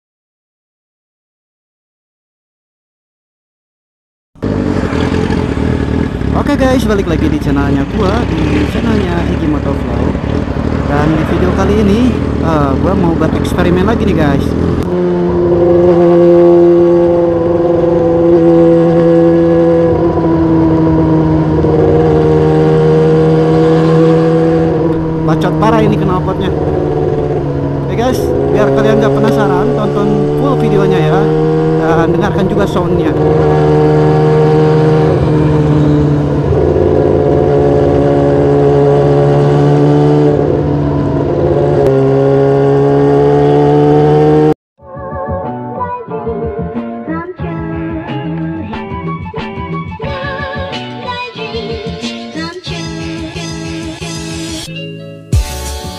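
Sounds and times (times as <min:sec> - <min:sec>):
motorcycle engine with noisy exhaust: 0:04.4 - 0:44.5.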